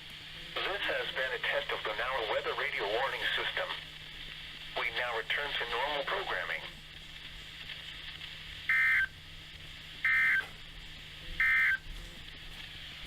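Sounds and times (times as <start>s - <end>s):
digital data tone bursts: 8.7s - 9.1s, 10.0s - 10.5s, 11.4s - 11.8s.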